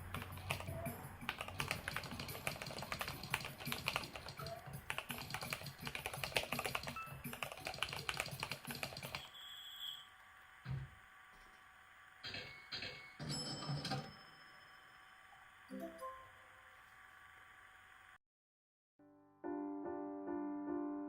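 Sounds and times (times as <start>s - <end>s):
mechanical keyboard key clacks: 0.1s - 9.2s.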